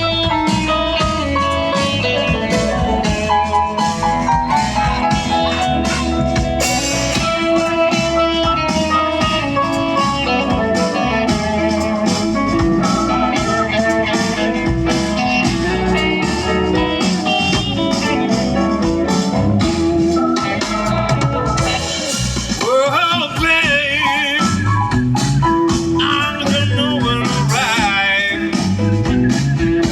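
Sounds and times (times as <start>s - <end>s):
bass: 0.0s - 29.9s
drums: 0.0s - 29.9s
guitar lines: 0.0s - 29.9s.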